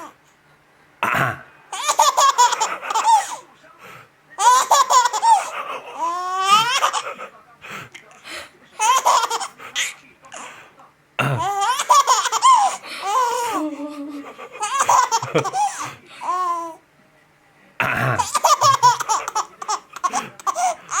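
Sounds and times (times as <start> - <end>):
man coughing: 11.2 - 11.5, 17.8 - 18.4.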